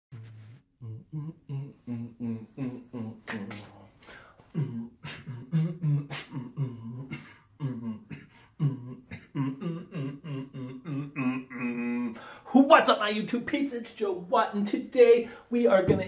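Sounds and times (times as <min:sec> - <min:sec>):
man beatboxing: 0:00.1 - 0:03.9, 0:04.5 - 0:11.8.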